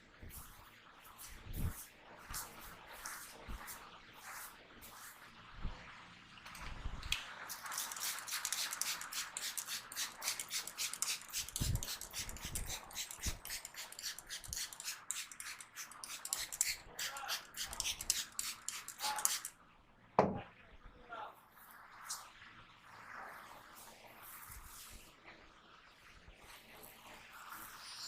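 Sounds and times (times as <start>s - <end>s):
hair crackling under massaging hands: 7.1s - 19.5s.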